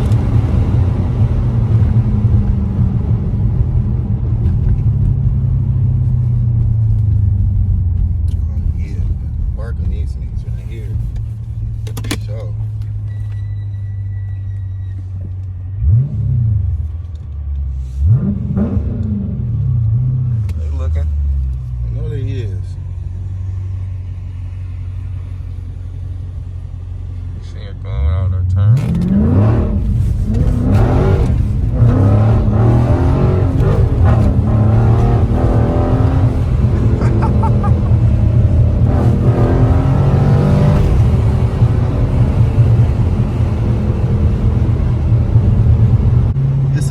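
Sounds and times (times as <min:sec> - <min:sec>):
car exhaust rumbling: 0:00.0 - 0:46.9
car engine revving sharply: 0:28.6 - 0:46.9.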